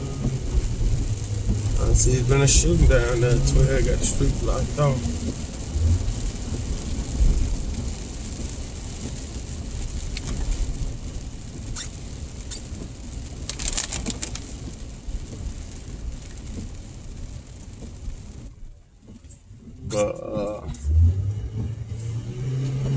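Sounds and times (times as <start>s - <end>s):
low rumble: 0.0s - 8.4s, 19.5s - 22.9s
rain on car: 0.0s - 22.9s
wet road noise: 0.0s - 22.9s.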